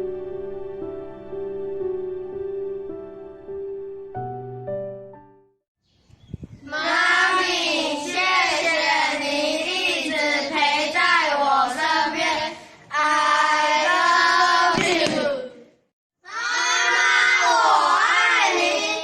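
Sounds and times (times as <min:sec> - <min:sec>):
young children singing in unison: 0:06.6 - 0:15.6, 0:16.3 - 0:19.0.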